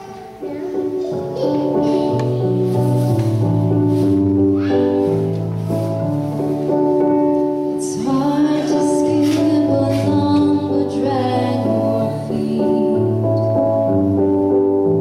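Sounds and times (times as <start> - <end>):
sustained keyboard chords: 0.0 - 15.0
woman singing: 7.8 - 13.2.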